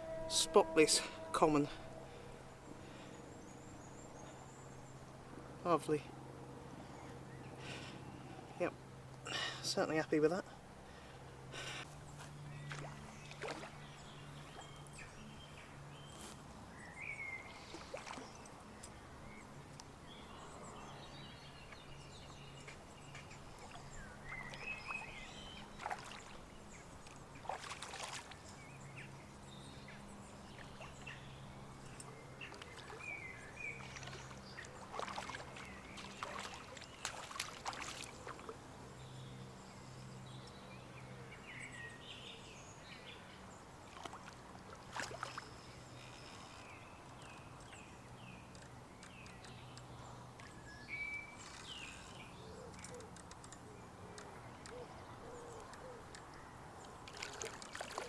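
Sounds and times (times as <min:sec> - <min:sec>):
low steady hum: 0:00.0 - 0:09.6.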